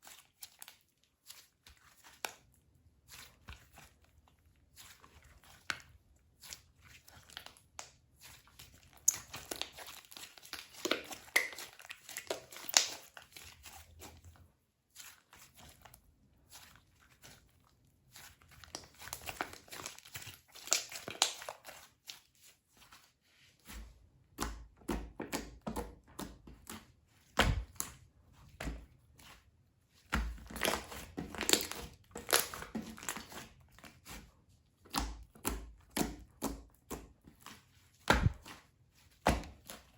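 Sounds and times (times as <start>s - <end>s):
soft low thumps: 27.4s - 27.7s, 38.1s - 38.4s
slime squeezed by hand popping: 38.1s - 38.4s.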